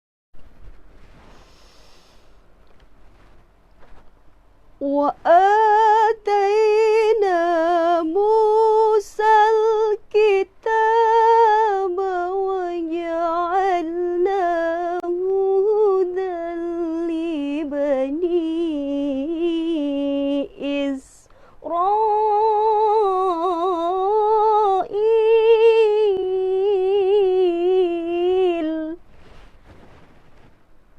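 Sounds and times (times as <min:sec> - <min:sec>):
person reciting melodically: 0:04.8 - 0:17.1.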